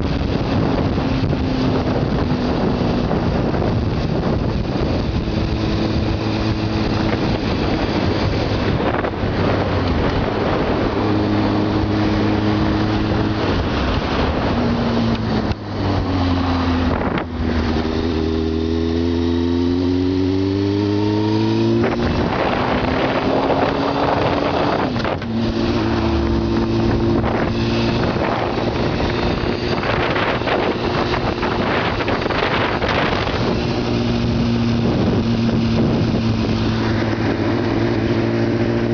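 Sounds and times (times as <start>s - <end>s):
motorcycle engine accelerating: 0.0s - 38.9s
wind on microphone: 0.0s - 38.9s.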